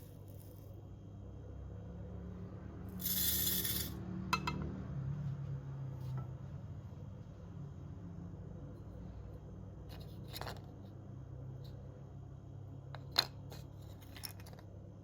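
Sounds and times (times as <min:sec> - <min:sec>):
tableware clink: 0:03.2 - 0:04.7.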